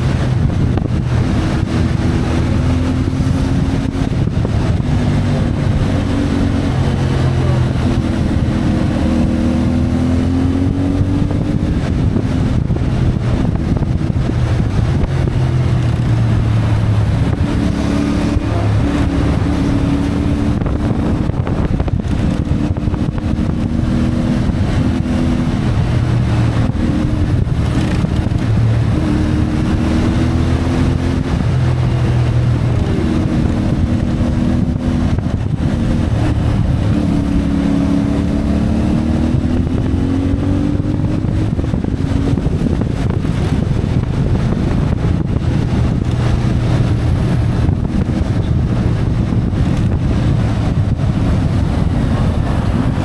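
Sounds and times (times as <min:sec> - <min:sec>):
motorcycle engine revving: 0:00.0 - 0:53.0
wind noise: 0:00.0 - 0:53.0.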